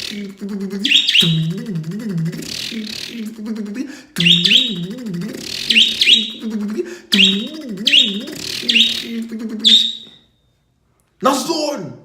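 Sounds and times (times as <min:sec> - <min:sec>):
man imitating engine cranking: 0:00.0 - 0:10.0
pet bird chirping sharply: 0:00.9 - 0:01.5, 0:07.2 - 0:10.2.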